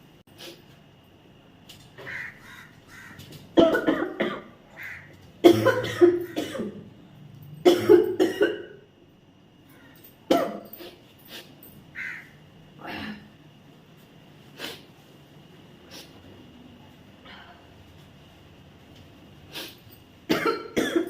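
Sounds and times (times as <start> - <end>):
person coughing: 3.6 - 4.6, 5.4 - 6.8, 7.6 - 8.8, 10.3 - 11.0, 20.3 - 21.0.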